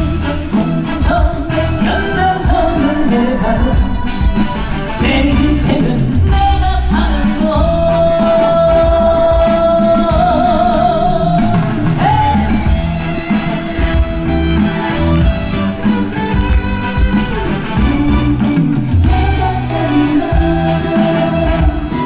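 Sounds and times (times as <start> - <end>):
band accompaniment: 0.0 - 22.0
man singing: 0.0 - 22.0.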